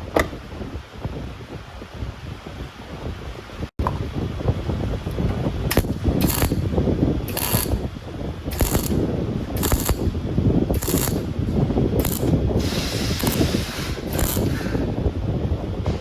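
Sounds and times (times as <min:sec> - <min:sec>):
workshop tool rattling: 0:05.7 - 0:07.9, 0:08.5 - 0:14.9
short hissing bursts: 0:12.0 - 0:15.0.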